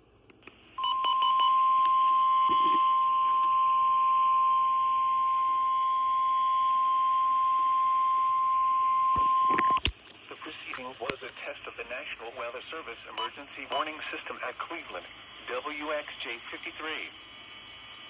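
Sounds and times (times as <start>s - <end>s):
steady high alarm tone: 0.8s - 9.7s.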